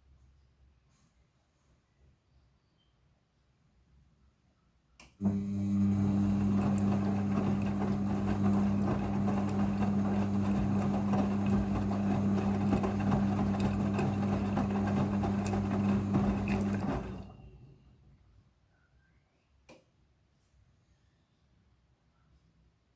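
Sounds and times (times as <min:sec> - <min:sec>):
washing machine hum: 0:05.2 - 0:18.1
water rushing: 0:05.8 - 0:17.4.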